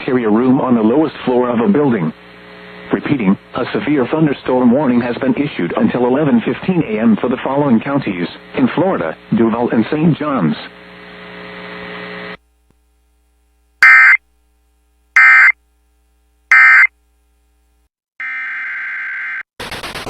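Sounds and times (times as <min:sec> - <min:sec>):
buzzing data tone bursts: 0:13.8 - 0:14.2, 0:15.2 - 0:15.6, 0:16.5 - 0:16.9.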